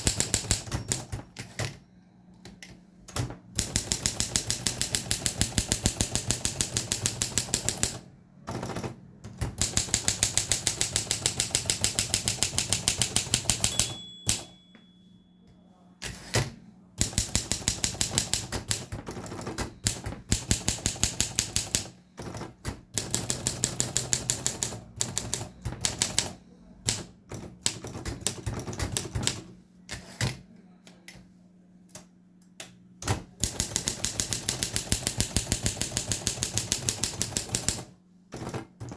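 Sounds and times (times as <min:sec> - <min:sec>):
typewriter carriage bell: 0:00.0 - 0:01.7, 0:09.6 - 0:15.2
typewriter key strikes: 0:00.0 - 0:01.8, 0:08.5 - 0:14.5.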